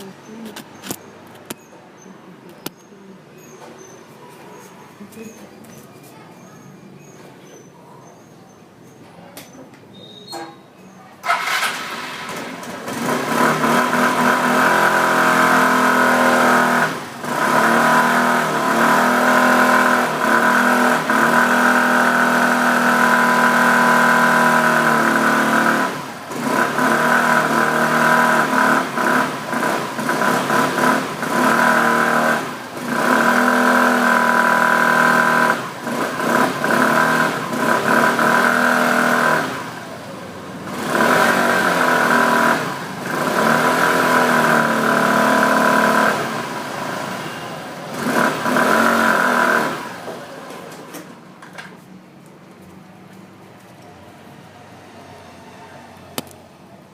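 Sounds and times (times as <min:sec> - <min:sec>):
scooter engine revving: 0:11.2 - 0:51.3.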